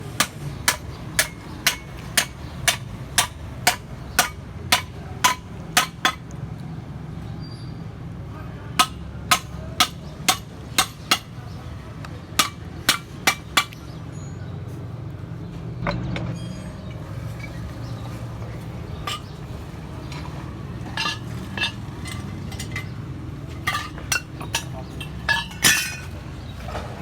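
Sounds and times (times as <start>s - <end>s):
hammer striking iron pipe: 0.2s - 6.2s, 8.8s - 11.3s, 12.4s - 13.8s, 21.0s - 22.9s, 23.6s - 26.1s.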